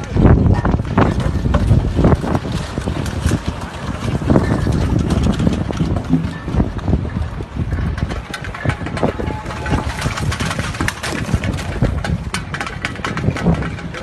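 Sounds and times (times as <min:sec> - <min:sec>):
sharp crackles and clicks: 0:00.0 - 0:14.0
wind buffeting microphone: 0:00.0 - 0:14.0.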